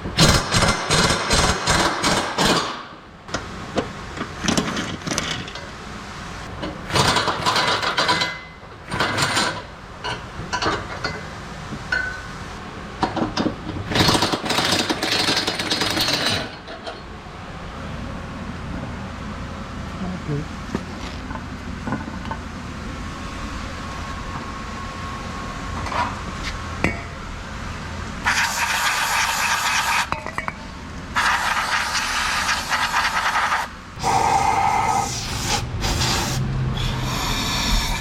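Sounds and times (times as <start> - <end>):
impact wrench hammering: 0.2 - 2.9.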